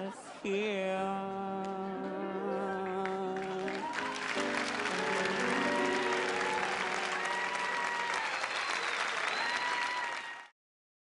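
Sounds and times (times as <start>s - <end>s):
band playing: 2.0s - 8.2s
audience applause: 3.0s - 10.5s.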